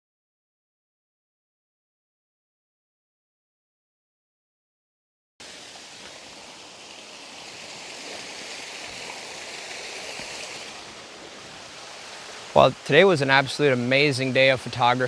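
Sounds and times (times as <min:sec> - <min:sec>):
waterfall rushing: 0:05.4 - 0:15.0.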